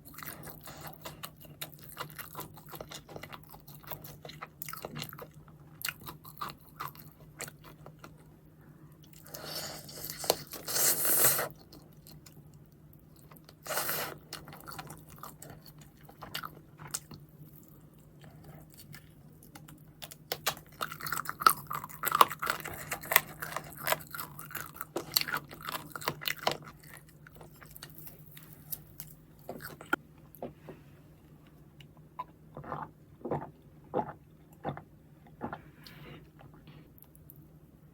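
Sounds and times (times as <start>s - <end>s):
crunchy bites and chewing: 13.2s - 30.6s.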